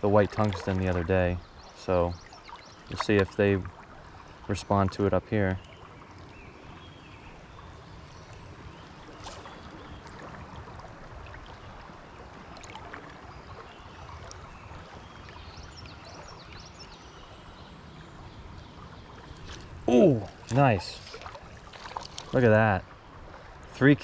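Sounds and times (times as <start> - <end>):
stream water rushing: 0.0 - 5.2, 19.2 - 24.0.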